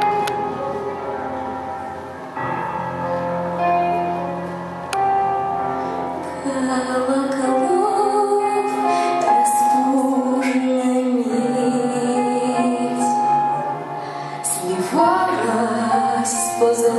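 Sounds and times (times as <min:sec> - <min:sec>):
instrumental backing: 0:00.0 - 0:16.9
woman singing slow song: 0:06.3 - 0:16.9.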